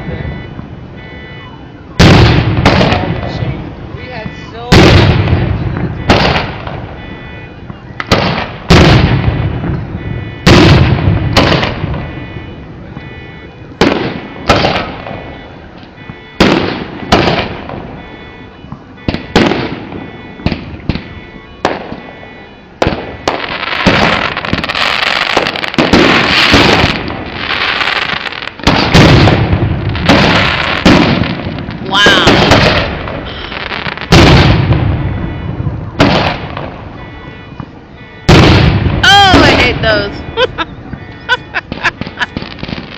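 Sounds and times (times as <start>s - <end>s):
fireworks bursting in bangs: 2.0s - 3.5s, 4.2s - 7.0s, 8.0s - 12.2s, 13.8s - 15.4s, 16.0s - 18.1s, 19.0s - 22.2s, 22.8s - 36.9s, 38.2s - 40.2s, 40.9s - 42.9s
fireworks crackling: 2.0s - 7.0s, 7.6s - 12.2s, 13.7s - 18.1s, 19.0s - 22.1s, 22.8s - 37.0s, 38.2s - 42.9s.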